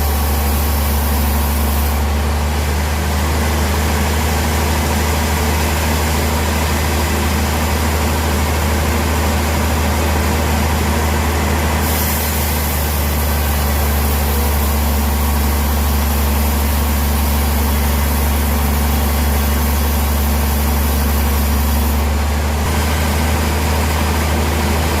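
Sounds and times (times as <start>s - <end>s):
sawmill engine droning: 0.0s - 25.0s
high hiss: 11.8s - 22.0s.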